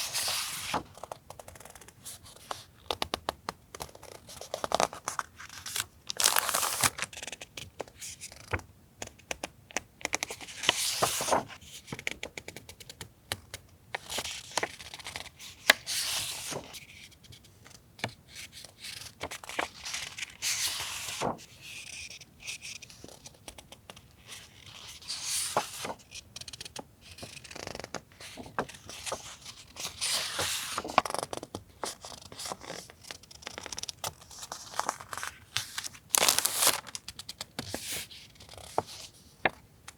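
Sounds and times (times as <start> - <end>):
paper sheets rustling and sliding: 0.0 - 1.0, 10.6 - 11.6, 15.8 - 16.9, 19.0 - 21.5, 24.6 - 26.1, 28.2 - 32.8, 34.3 - 37.0.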